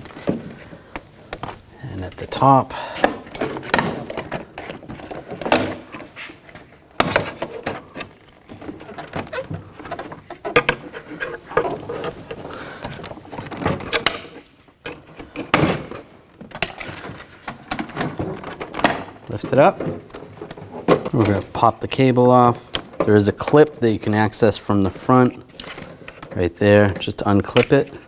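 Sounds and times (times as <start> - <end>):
rustling: 0.0 - 15.3.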